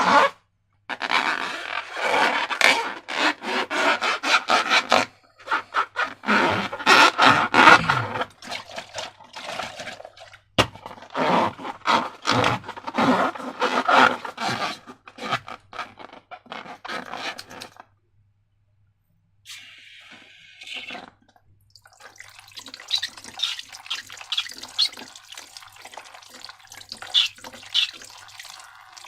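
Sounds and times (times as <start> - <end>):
slime squelching: 21.8 - 29.0.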